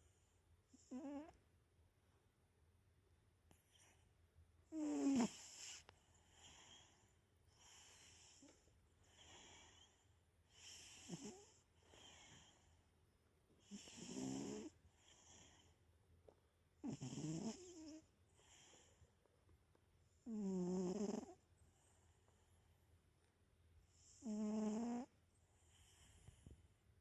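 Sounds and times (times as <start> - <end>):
cat snoring: 0.7 - 1.4, 4.7 - 12.7, 13.6 - 15.7, 16.8 - 18.9, 20.2 - 21.4, 24.0 - 26.6.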